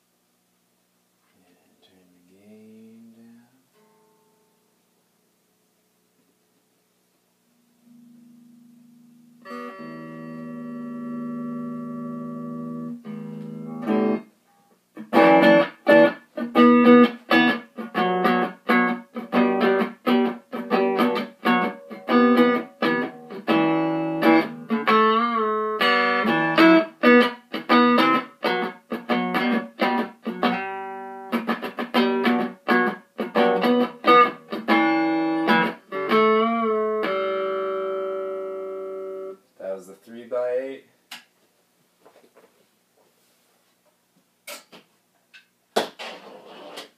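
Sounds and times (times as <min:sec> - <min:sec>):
clean electric guitar: 0:07.6 - 0:39.4.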